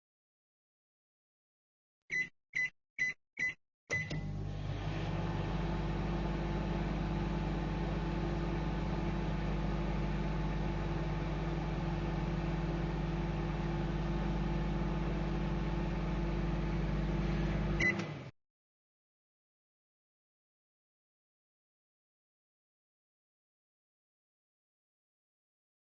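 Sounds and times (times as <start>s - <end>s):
microwave oven humming: 3.9s - 18.3s.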